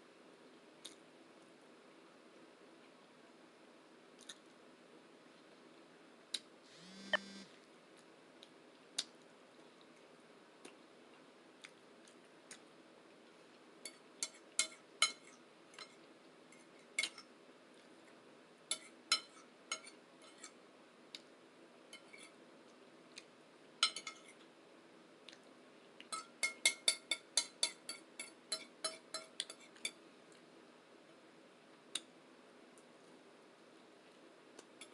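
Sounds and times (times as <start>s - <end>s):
chewing clicks and smacks: 4.2s - 4.5s, 8.0s - 10.0s, 25.2s - 26.2s.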